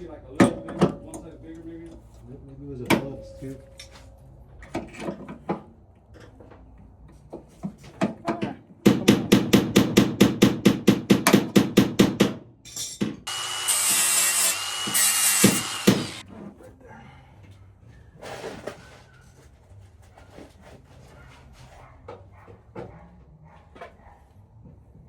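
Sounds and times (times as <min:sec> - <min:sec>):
power tool whining: 0:13.3 - 0:16.2.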